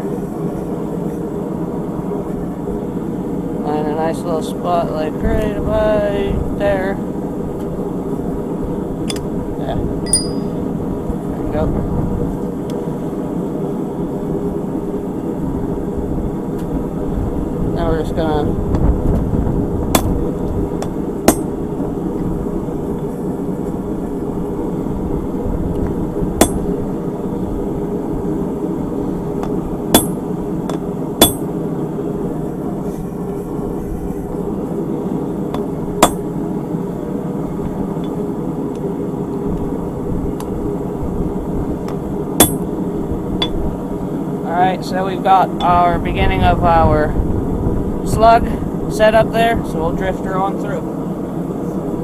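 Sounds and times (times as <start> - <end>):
steady low hum: 0.0 - 52.0
hammer striking metal on anvil: 10.1 - 10.6, 20.0 - 20.2, 20.8 - 21.5, 26.4 - 26.7, 29.4 - 31.6, 35.5 - 36.2, 42.4 - 42.7.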